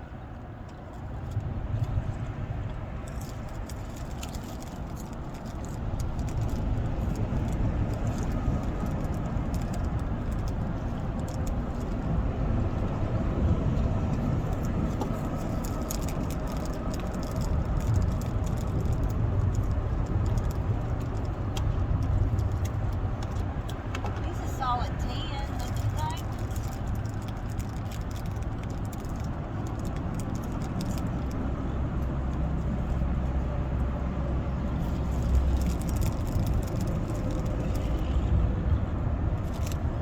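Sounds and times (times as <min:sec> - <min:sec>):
wind rumbling on microphone: 0:00.0 - 0:40.0
rain drops ticking: 0:13.4 - 0:31.5.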